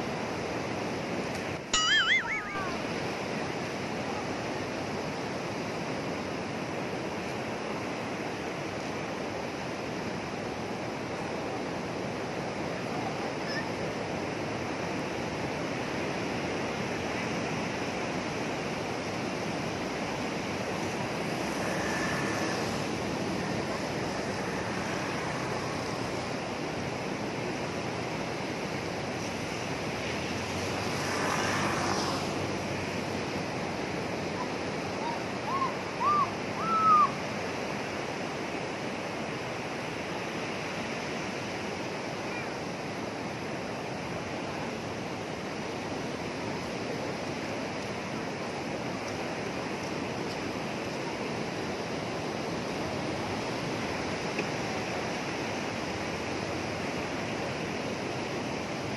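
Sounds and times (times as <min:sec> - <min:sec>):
sea waves breaking on beach: 0:00.0 - 0:58.9
wind: 0:00.0 - 0:58.9
short high chirps: 0:01.8 - 0:02.9.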